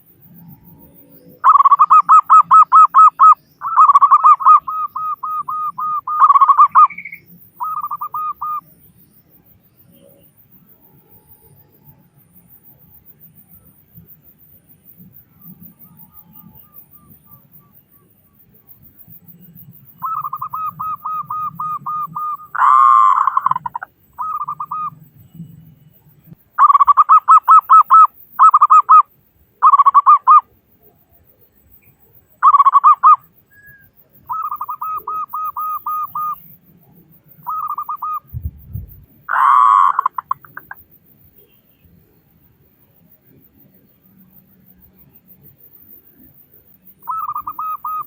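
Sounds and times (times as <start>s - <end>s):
dove cooing: 1.4s - 8.6s, 20.0s - 25.0s, 26.6s - 30.5s, 32.4s - 36.4s, 37.5s - 38.5s, 39.3s - 40.8s, 47.0s - 48.0s.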